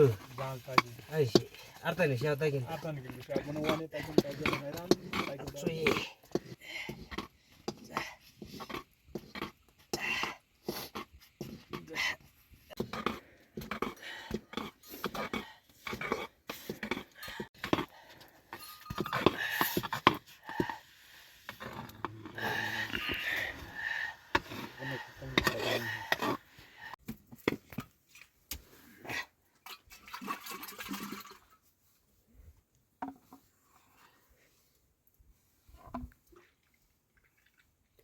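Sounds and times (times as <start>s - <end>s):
person's voice: 24.8s - 26.1s.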